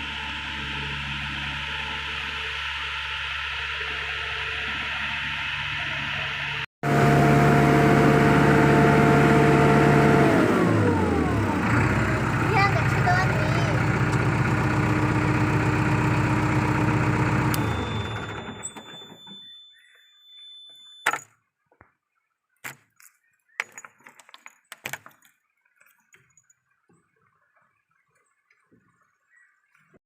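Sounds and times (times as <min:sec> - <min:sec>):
diesel engine winding down: 0:00.0 - 0:19.4
thin high tone: 0:16.8 - 0:21.3
clicks and knocks: 0:22.6 - 0:26.3.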